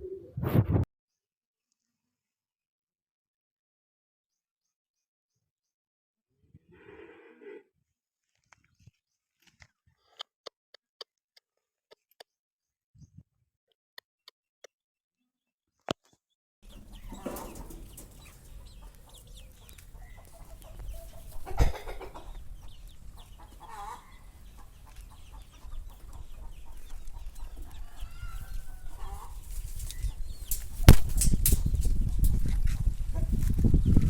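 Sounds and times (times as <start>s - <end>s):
chickens clucking: 16.6s - 34.0s.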